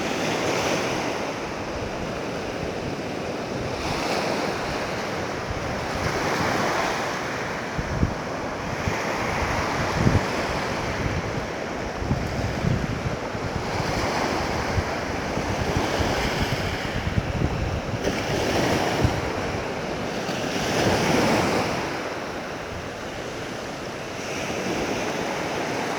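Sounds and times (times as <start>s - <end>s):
sea waves breaking on beach: 0.0s - 25.9s
wind buffeting microphone: 0.0s - 25.9s.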